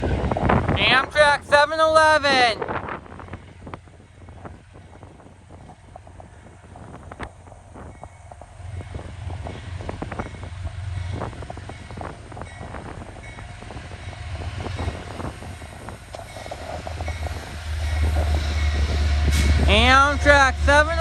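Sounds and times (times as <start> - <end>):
diesel locomotive engine rumble: 0.0 - 21.0
wind noise on microphone: 0.0 - 21.0
clicks and knocks from train: 16.1 - 19.7.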